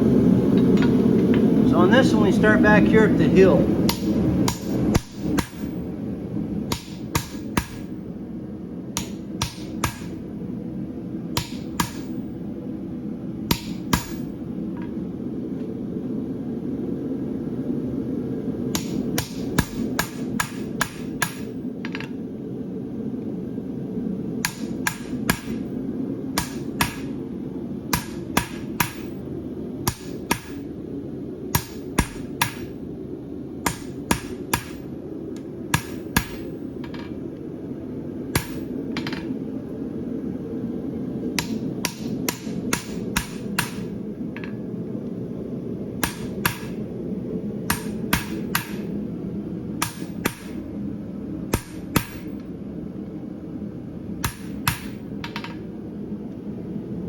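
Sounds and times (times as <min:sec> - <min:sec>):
low rumble: 0:00.0 - 0:57.0
hammer striking steel on anvil: 0:03.9 - 0:05.8, 0:06.7 - 0:07.9, 0:09.0 - 0:10.2, 0:11.4 - 0:12.2, 0:13.5 - 0:14.3, 0:18.8 - 0:22.1, 0:24.4 - 0:25.6, 0:26.4 - 0:27.2, 0:27.9 - 0:29.1, 0:29.9 - 0:30.7, 0:31.6 - 0:32.7, 0:33.7 - 0:34.9, 0:35.7 - 0:37.0, 0:38.4 - 0:39.3, 0:41.4 - 0:44.5, 0:46.0 - 0:46.8, 0:47.7 - 0:48.9, 0:49.8 - 0:50.6, 0:51.6 - 0:52.4, 0:54.2 - 0:55.6.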